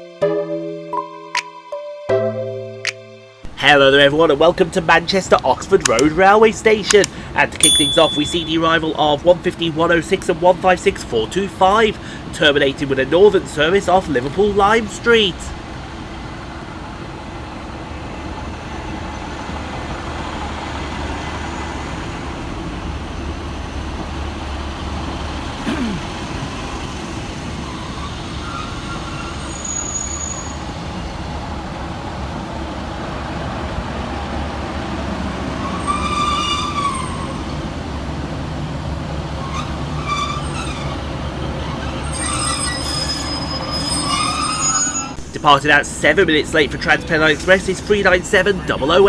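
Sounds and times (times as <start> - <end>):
train rumbling: 3.4 - 49.0
train wheel squeal: 27.6 - 31.1, 35.6 - 37.6, 39.4 - 45.2.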